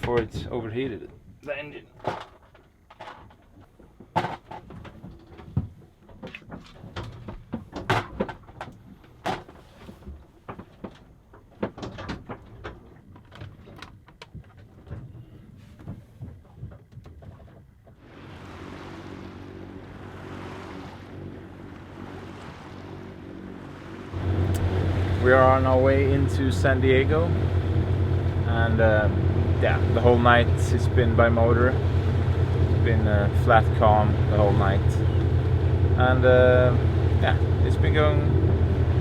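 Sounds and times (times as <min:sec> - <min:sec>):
water noise: 0:00.0 - 0:39.0
wind: 0:00.0 - 0:39.0
boat engine running: 0:14.2 - 0:39.0.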